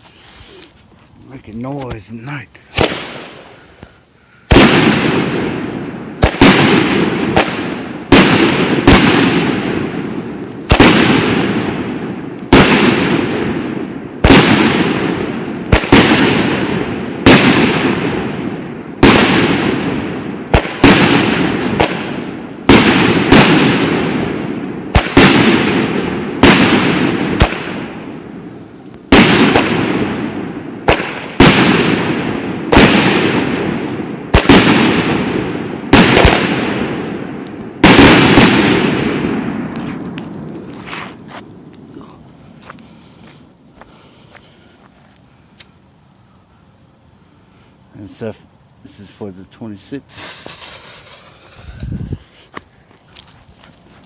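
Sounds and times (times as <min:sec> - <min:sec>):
fireworks bangs with echo: 0:01.5 - 0:03.7, 0:04.5 - 0:40.8, 0:49.8 - 0:51.8.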